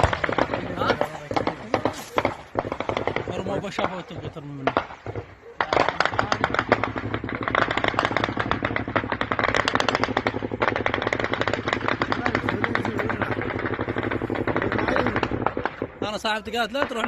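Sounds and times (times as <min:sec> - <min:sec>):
automatic gunfire: 0:04.6 - 0:16.0.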